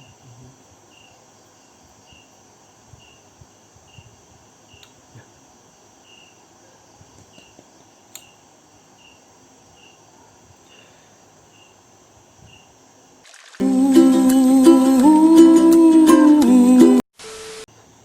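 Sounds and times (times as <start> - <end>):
insect chirps: 0.0 - 14.6
high-pitched hiss: 0.0 - 18.0
music: 13.6 - 17.0.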